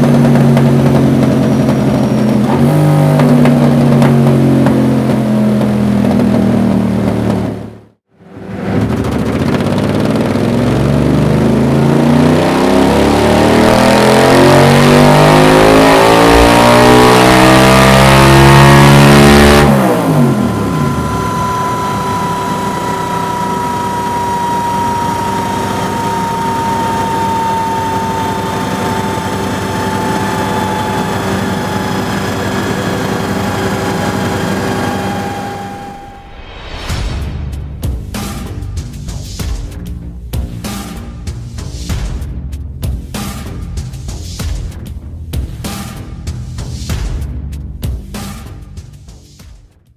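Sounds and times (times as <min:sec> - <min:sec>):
motorcycle engine revving: 0:00.0 - 0:36.4
thin engine whine: 0:00.0 - 0:37.1.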